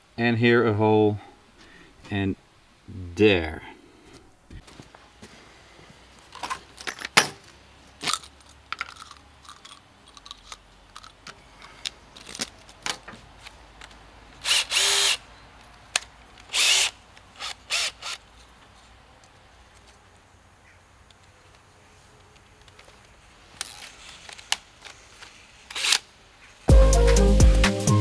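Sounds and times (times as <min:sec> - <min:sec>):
tools clicking and knocking: 0:06.4 - 0:18.1
power drill bursts on metal: 0:14.4 - 0:15.2, 0:16.5 - 0:18.2.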